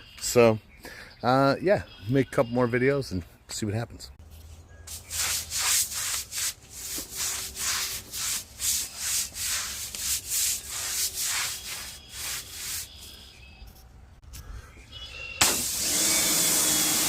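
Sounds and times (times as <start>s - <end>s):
pressure washer spray on concrete: 4.9s - 13.0s, 15.4s - 17.0s.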